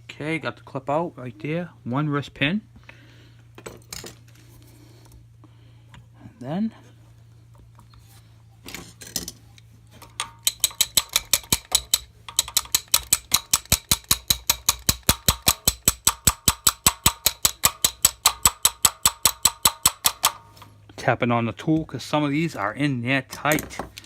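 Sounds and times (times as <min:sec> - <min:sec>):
hammer tapping on steel tool: 0:10.2 - 0:20.6.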